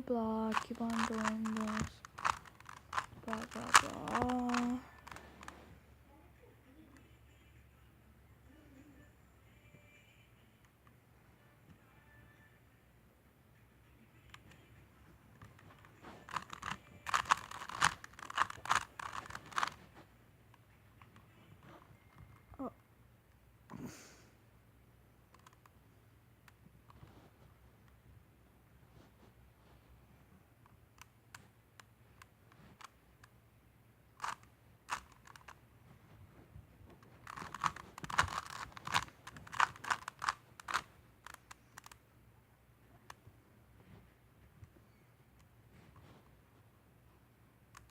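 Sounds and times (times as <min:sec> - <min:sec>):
plastic puzzle cube clacking: 0:00.4 - 0:05.6, 0:15.3 - 0:21.3, 0:25.3 - 0:25.8, 0:34.2 - 0:35.6, 0:36.9 - 0:42.0.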